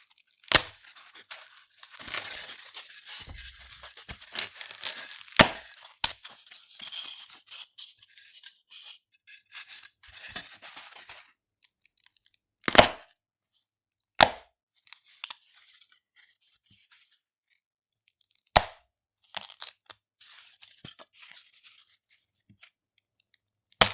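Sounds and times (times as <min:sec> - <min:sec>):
foam crackling when rubbed: 0:01.1 - 0:05.6.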